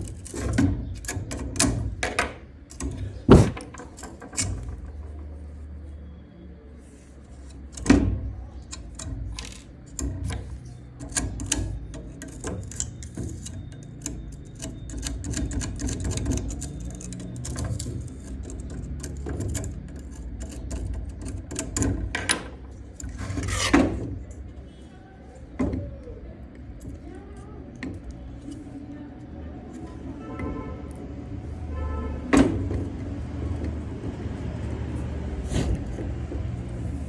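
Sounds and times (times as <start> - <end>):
handling clicks and rattles: 0.0 - 5.6, 7.5 - 24.5
scraping sound: 35.4 - 36.2.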